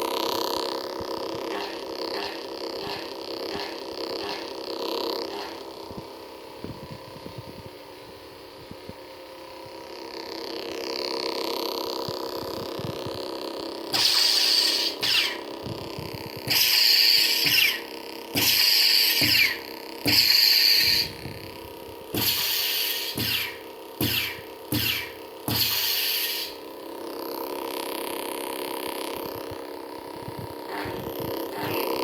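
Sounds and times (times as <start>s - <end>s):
lightsaber electronic hum: 0.0s - 32.0s
lightsaber effect sounds: 13.9s - 15.5s, 16.5s - 21.2s, 22.1s - 26.6s, 30.7s - 32.0s.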